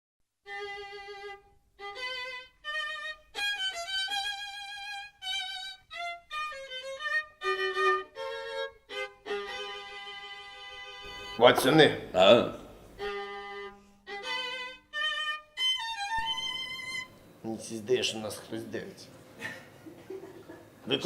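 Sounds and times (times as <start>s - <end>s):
solo violin slow melody: 0.5s - 11.5s, 12.9s - 17.2s.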